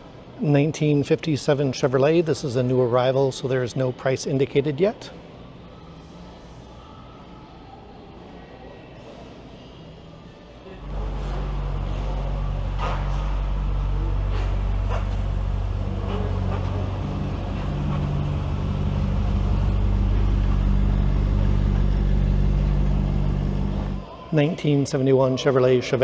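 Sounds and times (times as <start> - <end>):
car engine idling: 10.7 - 24.1.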